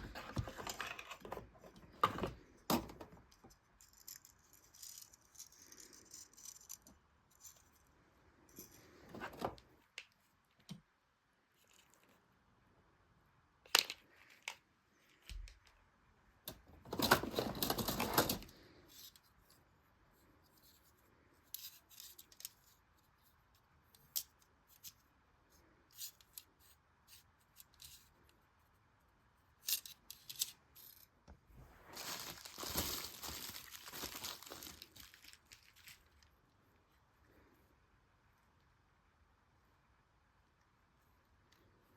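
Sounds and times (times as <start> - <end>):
packaging tearing and crinkling: 31.9 - 36.1.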